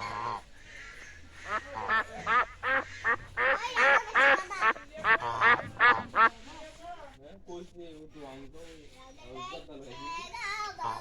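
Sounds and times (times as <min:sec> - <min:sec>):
ducks quacking: 0:00.0 - 0:06.4, 0:10.8 - 0:11.0.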